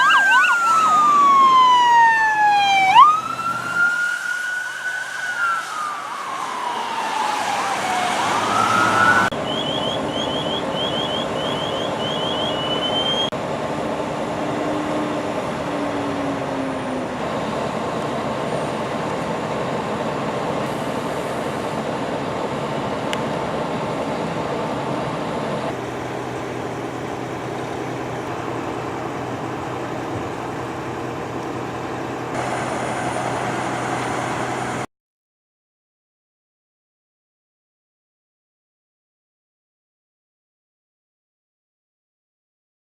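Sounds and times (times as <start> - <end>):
emergency vehicle siren wailing: 0.0 - 24.4, 25.7 - 34.9
heavy vehicle engines running: 0.0 - 34.9.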